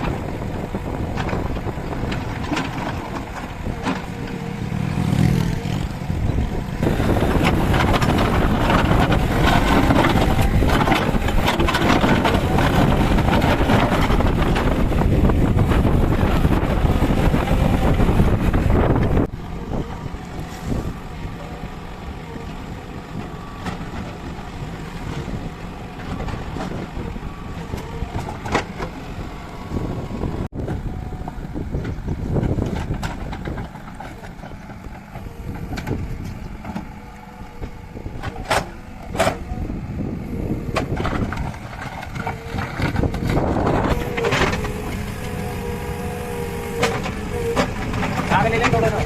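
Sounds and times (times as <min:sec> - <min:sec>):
diesel engine rumbling: 0:00.0 - 0:49.0.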